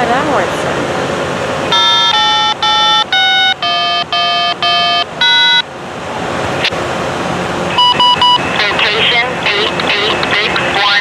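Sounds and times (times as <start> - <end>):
short electronic melody: 1.7 - 5.6.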